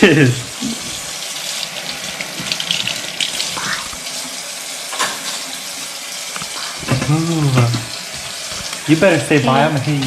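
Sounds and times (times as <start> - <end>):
tap running into sink: 0.6 - 5.5, 6.3 - 10.0
dishes clinking: 4.9 - 5.5, 6.8 - 8.6.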